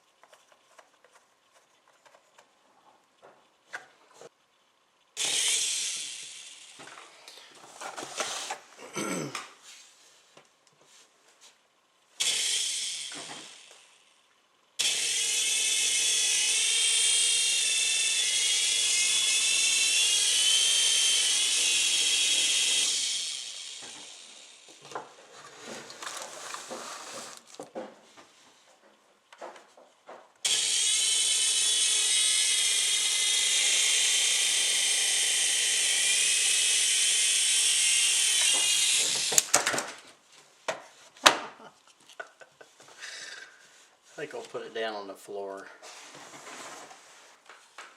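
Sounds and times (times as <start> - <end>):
small electric motor whirring: 5.2 - 7.2, 12.2 - 14.1, 14.8 - 24.8, 30.4 - 39.6
clicks and handling noises: 24.9 - 27.9.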